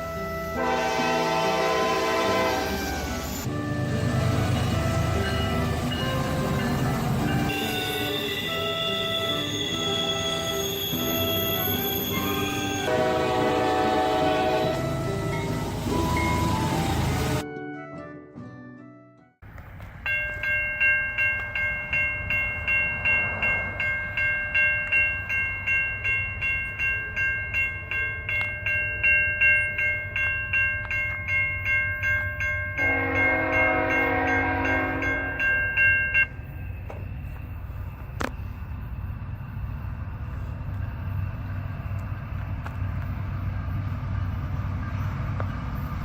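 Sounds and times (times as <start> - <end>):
train horn blast: 0.0 - 5.7, 12.1 - 15.2, 32.8 - 35.6
train rumbling: 0.0 - 17.4, 19.4 - 46.0.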